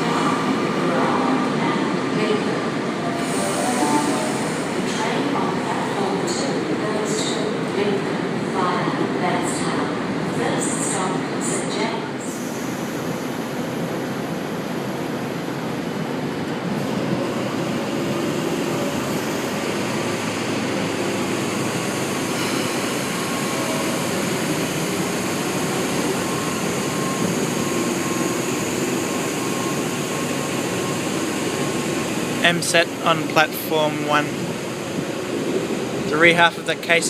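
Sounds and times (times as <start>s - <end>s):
electric train running hum: 0.0s - 37.0s.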